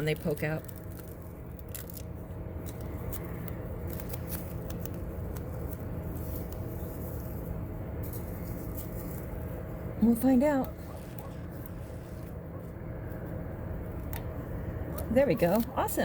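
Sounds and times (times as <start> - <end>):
paper sticker crinkling: 0.0 - 13.3
steady low hum: 0.0 - 16.0.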